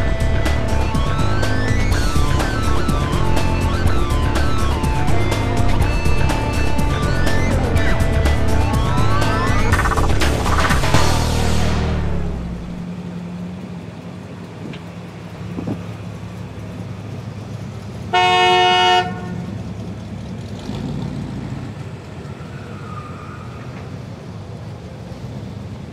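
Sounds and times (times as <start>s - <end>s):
steady low rumble: 0.0s - 13.3s
car horn blast: 18.1s - 19.5s.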